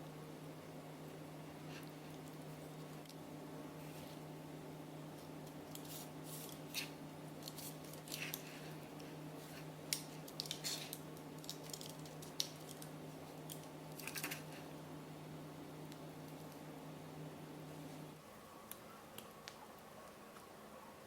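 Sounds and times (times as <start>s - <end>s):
steady low hum: 0.0s - 21.0s
crinkly rustles: 5.2s - 14.7s.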